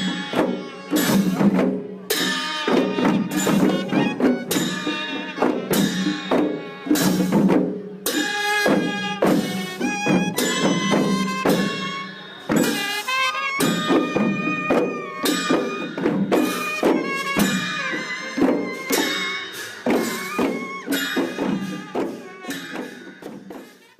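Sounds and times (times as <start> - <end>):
cymbals clashing: 0.0 - 23.9
drums: 0.0 - 23.9
wind instruments melody: 0.0 - 23.9.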